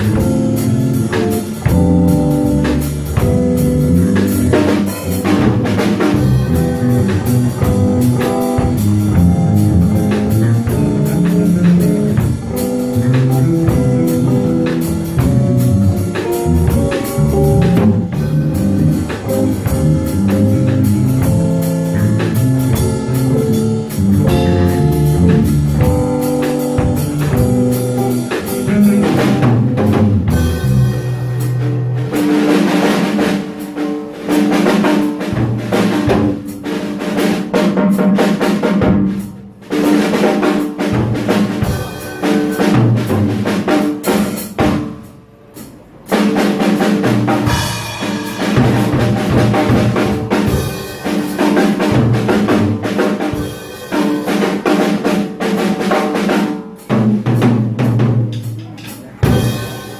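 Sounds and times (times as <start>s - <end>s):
bass: 0.0s - 59.9s
drum kit: 0.0s - 59.9s
piano: 0.0s - 59.9s.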